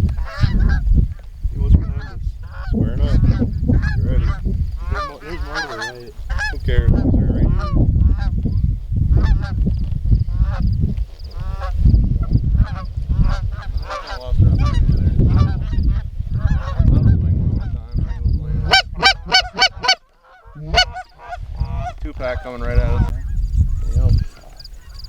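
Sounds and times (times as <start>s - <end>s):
geese honking: 2.0s - 6.6s, 12.7s - 14.8s, 18.6s - 22.6s.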